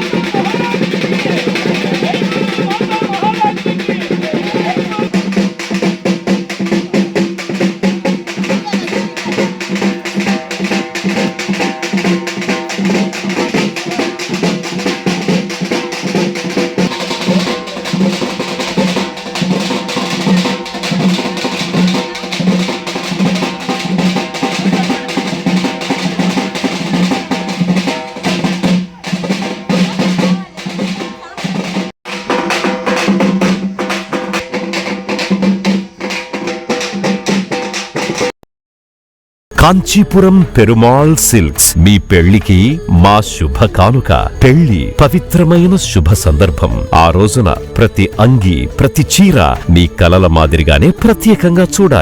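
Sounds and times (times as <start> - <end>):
fast continuous drumming: 0.0 - 38.3, 39.5 - 52.0.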